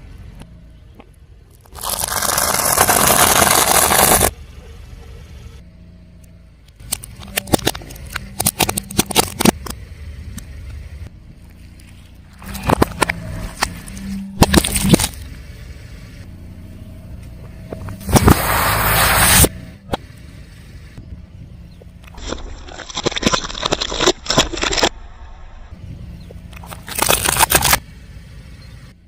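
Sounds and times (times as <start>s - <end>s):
car engine running low: 0.0s - 23.2s, 24.3s - 29.0s
crackling and snapping: 1.5s - 4.3s, 6.7s - 9.8s, 11.5s - 15.3s, 22.0s - 25.0s, 26.5s - 27.8s
tyres crushing objects: 1.6s - 4.3s, 6.8s - 9.7s, 12.3s - 15.3s, 22.0s - 24.9s, 26.6s - 27.8s.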